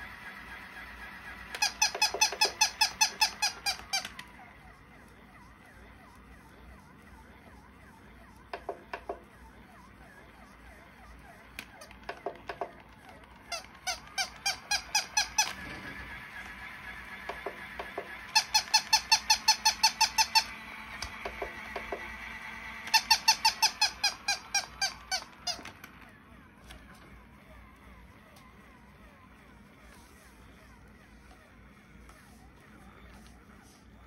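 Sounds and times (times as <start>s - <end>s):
toy motor humming: 0.0s - 34.0s
toy dog squeaky yips: 1.3s - 4.5s, 11.0s - 15.7s, 18.0s - 21.2s, 22.8s - 26.0s.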